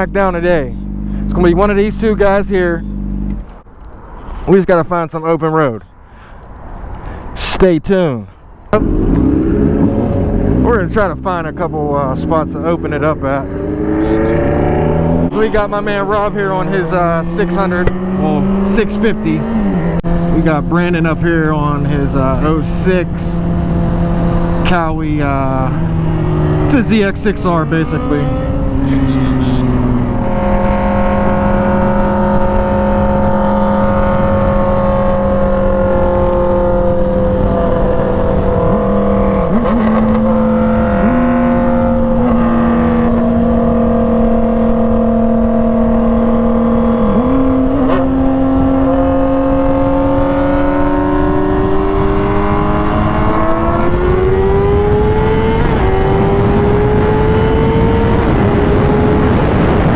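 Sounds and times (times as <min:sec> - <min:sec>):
motorcycle engine revving: 0:00.0 - 0:03.7, 0:08.8 - 0:59.9
wind rushing: 0:13.4 - 0:59.9.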